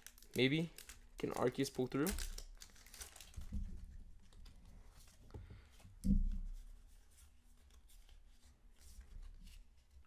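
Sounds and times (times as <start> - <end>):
trading cards rustling and clicking: 0.0 - 3.5.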